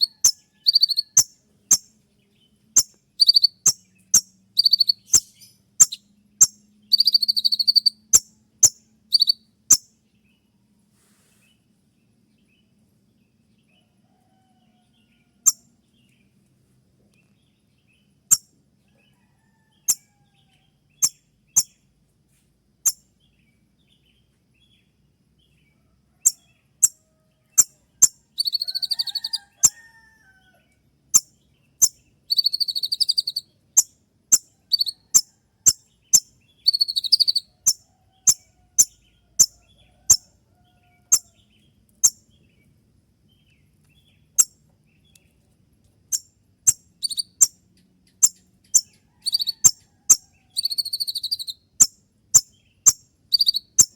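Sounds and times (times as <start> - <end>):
bird clicking calls: 0.0 - 1.9, 2.8 - 9.8, 31.2 - 33.4, 34.3 - 35.8, 36.7 - 40.2, 46.1 - 53.9
buzzy bird trills: 0.0 - 1.9, 2.8 - 9.9, 27.6 - 29.8, 31.2 - 40.3, 46.1 - 47.6, 48.2 - 53.9.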